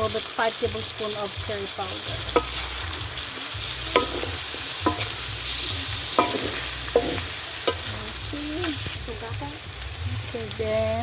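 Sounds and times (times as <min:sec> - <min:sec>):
curry sizzling in a pan: 0:00.0 - 0:11.0
utensil clinking against pan: 0:03.9 - 0:05.1.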